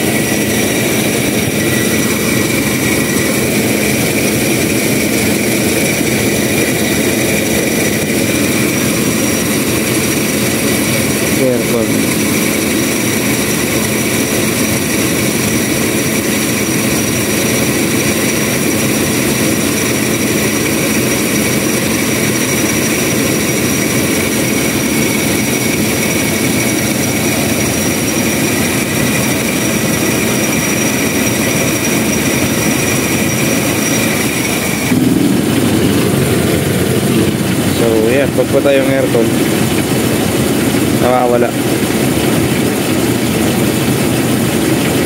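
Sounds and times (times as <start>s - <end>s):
high-pitched squeak: 0.0s - 10.2s, 17.6s - 35.1s
car engine idling: 0.0s - 45.0s.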